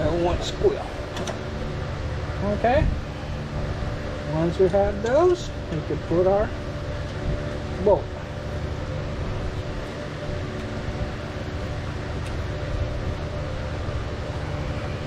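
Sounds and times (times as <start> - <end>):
machine humming: 0.0 - 15.0.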